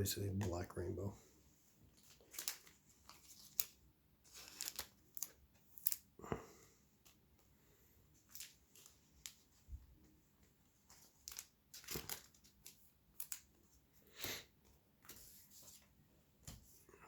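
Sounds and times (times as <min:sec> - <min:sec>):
trading cards being shuffled: 0:01.9 - 0:06.1, 0:10.8 - 0:13.6.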